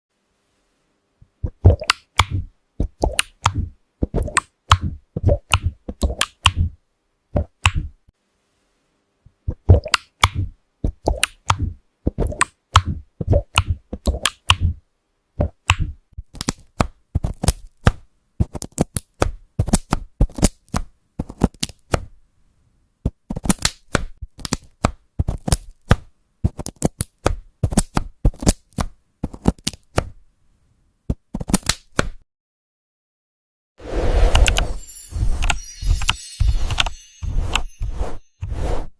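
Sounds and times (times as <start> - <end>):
mechanical keyboard typing: 35.4 - 37.7.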